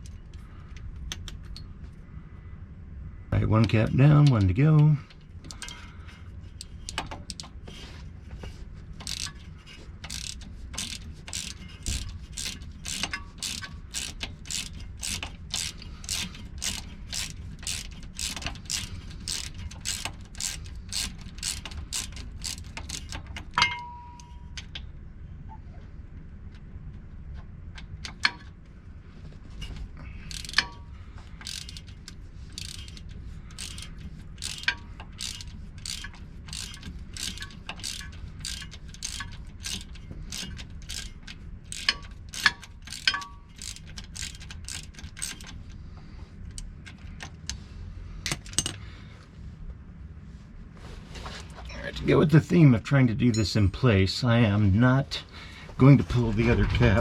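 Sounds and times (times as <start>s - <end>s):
ratchet clicking: 5.1s - 5.9s, 6.6s - 7.6s, 9.0s - 23.6s, 30.2s - 45.8s
sharp metallic clink: 23.6s - 24.6s.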